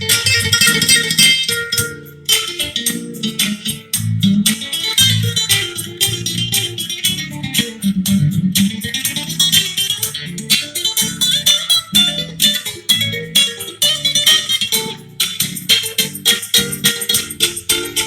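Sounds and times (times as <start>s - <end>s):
plucked strings dance tune: 0.0s - 18.0s.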